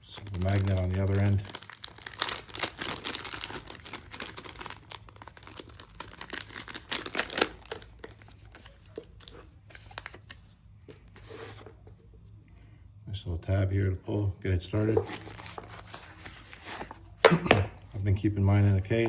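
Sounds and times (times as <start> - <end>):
packaging crinkling and rustling: 0.0 - 12.0, 14.8 - 17.2.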